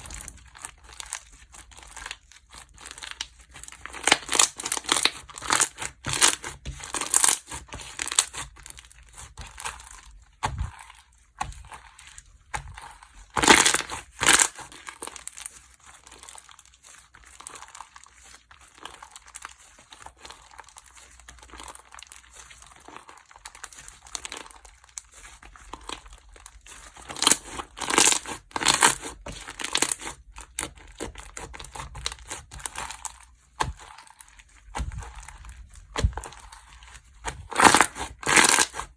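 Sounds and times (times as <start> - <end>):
slime squished by hand: 0.0 - 38.9.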